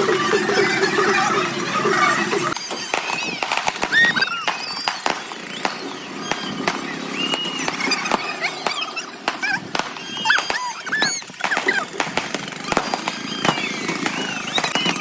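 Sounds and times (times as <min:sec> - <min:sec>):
wavering tune or voices: 0:00.0 - 0:02.6
crowd noise: 0:00.0 - 0:15.0
high squeaks and whistles: 0:00.0 - 0:15.0.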